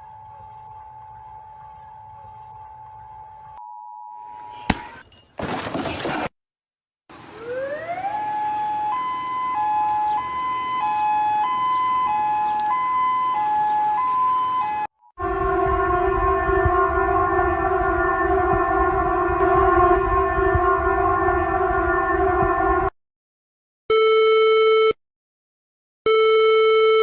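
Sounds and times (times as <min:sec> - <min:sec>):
two-tone siren: 0:00.0 - 0:04.7, 0:07.3 - 0:23.0, 0:23.9 - 0:25.0, 0:26.1 - 0:27.0
steady tone: 0:15.2 - 0:22.9.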